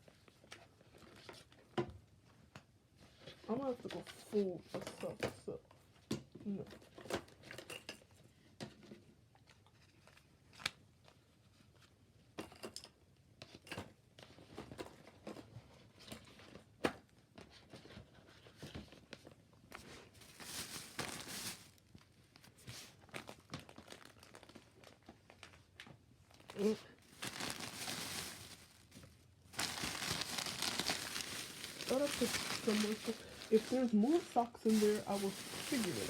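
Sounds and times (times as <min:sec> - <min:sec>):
packaging crinkling and rustling: 0:17.7 - 0:36.0.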